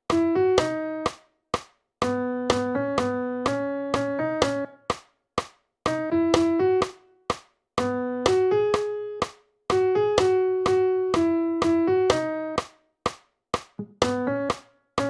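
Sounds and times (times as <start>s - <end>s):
keyboard-like synthetic melody: 13.8s - 14.6s.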